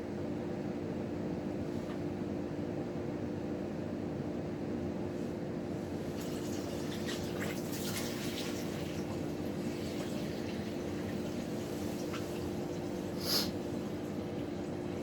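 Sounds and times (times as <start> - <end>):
water splashing into bucket: 6.0 - 15.0.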